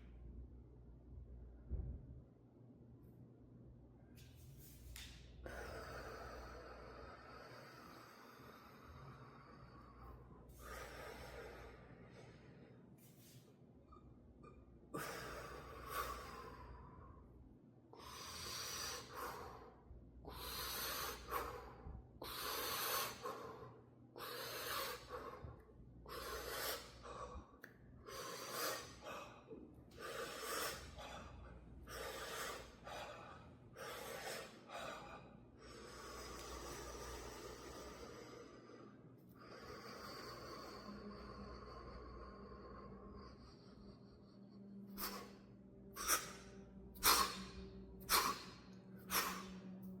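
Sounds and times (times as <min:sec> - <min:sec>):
person breathing hard: 0:05.1 - 0:14.1, 0:14.9 - 0:50.0.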